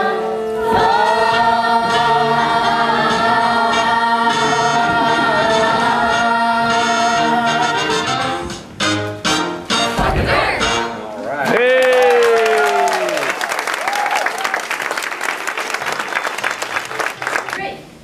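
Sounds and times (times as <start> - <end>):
musical accompaniment: 0.0 - 11.3.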